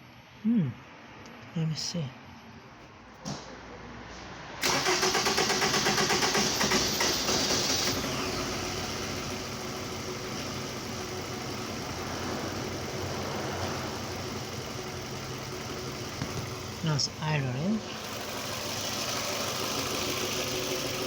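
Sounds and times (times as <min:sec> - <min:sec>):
car engine cranking and idling: 0:04.6 - 0:21.0.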